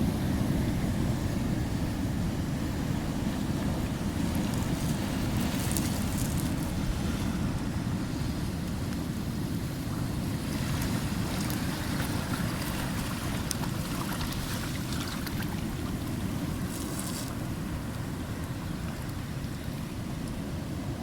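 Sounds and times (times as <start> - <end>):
sea waves washing: 0.0 - 21.0
faint ticks and crackles: 4.3 - 6.8.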